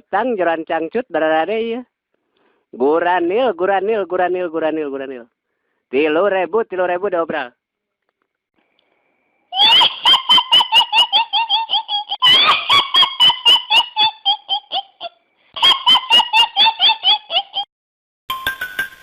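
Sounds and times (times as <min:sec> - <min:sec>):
sped-up laughing ringtone: 0:09.6 - 0:17.7.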